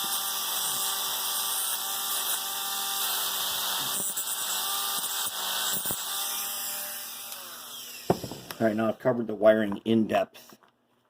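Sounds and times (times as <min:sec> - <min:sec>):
rotary tool whining: 0:00.0 - 0:08.6.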